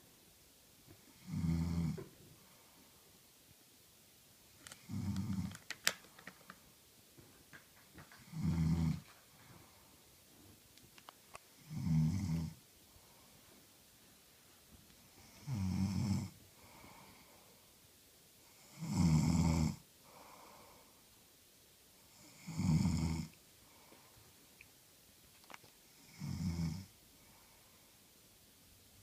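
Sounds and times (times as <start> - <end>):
woman snoring: 1.1 - 2.0, 4.8 - 5.5, 8.2 - 9.0, 11.6 - 12.6, 15.2 - 17.2, 18.6 - 19.8, 22.1 - 23.4, 26.0 - 26.9
faint breath: 2.2 - 3.2, 12.9 - 13.7, 16.5 - 17.8, 20.0 - 21.2, 23.6 - 24.4, 27.1 - 28.2.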